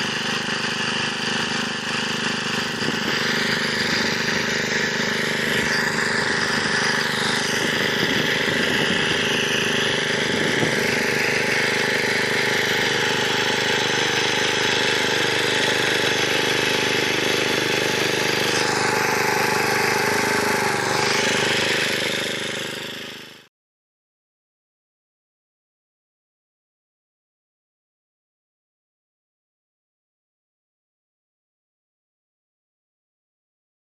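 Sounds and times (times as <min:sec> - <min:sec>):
tractor engine running under load: 0:00.0 - 0:23.5.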